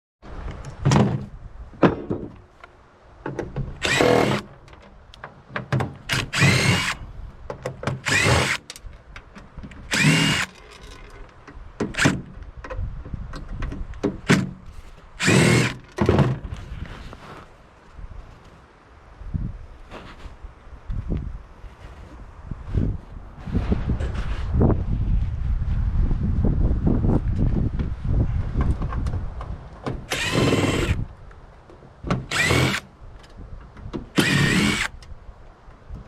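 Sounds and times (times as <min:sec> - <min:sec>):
power drill bursts: 0:03.8 - 0:04.5, 0:06.1 - 0:07.0, 0:08.0 - 0:08.6, 0:09.9 - 0:10.6, 0:15.2 - 0:15.8, 0:30.1 - 0:31.0, 0:32.3 - 0:32.8, 0:34.2 - 0:34.9
metal parts knocking and clicking: 0:09.9 - 0:12.2.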